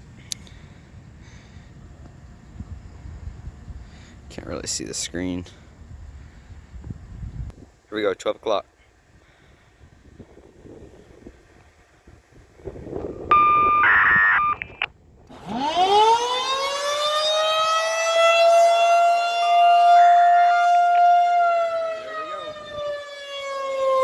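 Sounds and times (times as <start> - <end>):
warning siren wailing: 13.2 - 14.7, 15.3 - 24.0
radio activation tones: 13.2 - 14.9.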